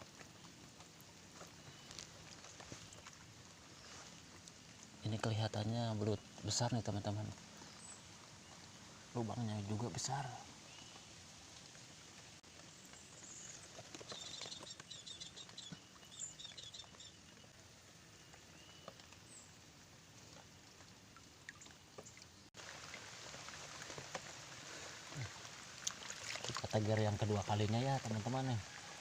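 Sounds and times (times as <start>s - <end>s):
light pattering water: 0.0s - 29.0s.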